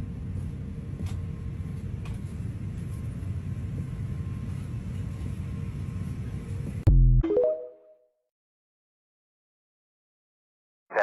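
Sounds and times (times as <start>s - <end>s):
airliner engines and airflow rumble: 0.0s - 6.9s.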